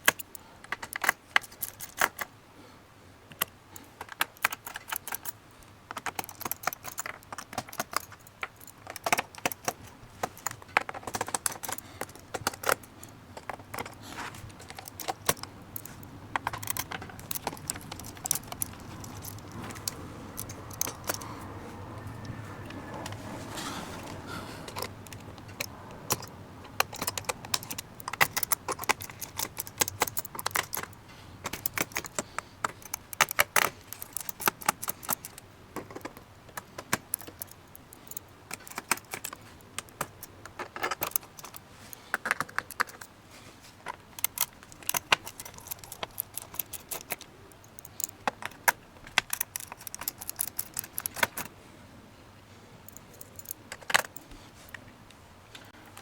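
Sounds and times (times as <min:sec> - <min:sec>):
screws clinking: 0:04.0 - 0:21.2, 0:24.0 - 0:43.1, 0:44.1 - 0:51.5.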